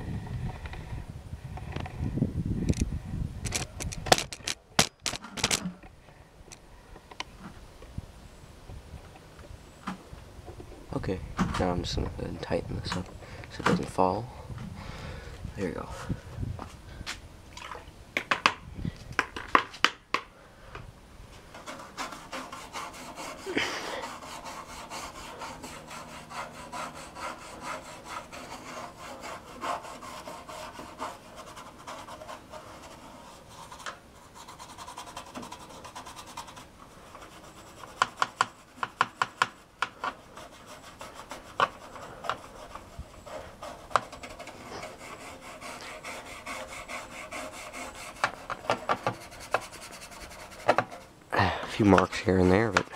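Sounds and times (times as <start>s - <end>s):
brush scrubbing plastic: 21.5s - 51.1s.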